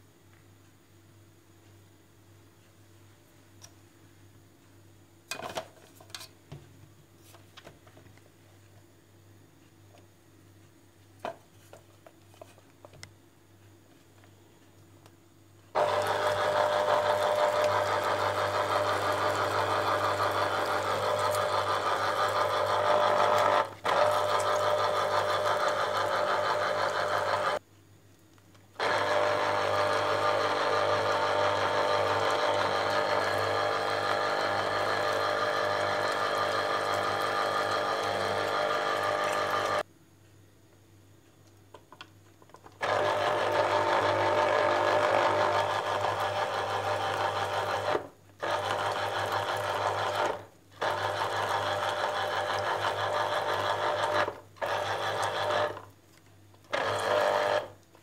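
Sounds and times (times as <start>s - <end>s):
kitchen appliance motor whining: 15.8s - 27.6s, 28.8s - 39.8s, 42.8s - 55.9s, 56.7s - 57.8s.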